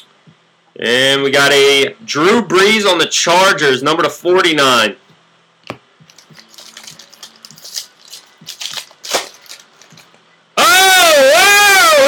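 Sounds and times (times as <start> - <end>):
faint steady hum: 0.0 - 12.0
cards and wrapping rustling: 6.1 - 10.2.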